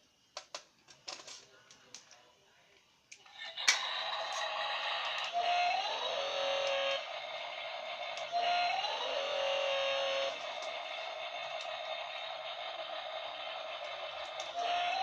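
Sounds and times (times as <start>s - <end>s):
toy mechanical-electronic noise: 3.2s - 15.0s.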